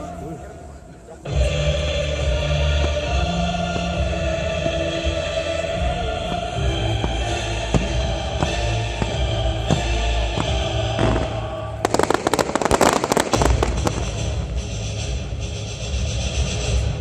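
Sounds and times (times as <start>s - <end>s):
music: 0.0s - 17.0s
fireworks crackling and banging: 6.9s - 16.9s.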